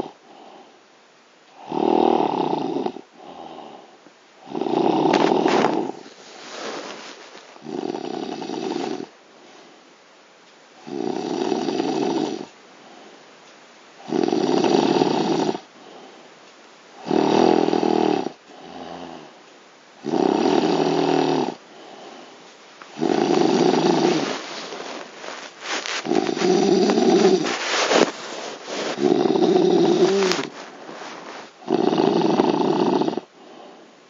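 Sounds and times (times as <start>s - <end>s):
quiet breathing: 0.0s - 10.1s, 11.6s - 34.0s
man snoring loudly: 1.6s - 3.8s, 4.4s - 6.0s, 7.6s - 9.1s, 10.8s - 12.5s, 14.0s - 15.6s, 17.0s - 19.2s, 20.0s - 21.6s, 22.9s - 25.1s, 25.8s - 30.5s, 31.6s - 33.3s.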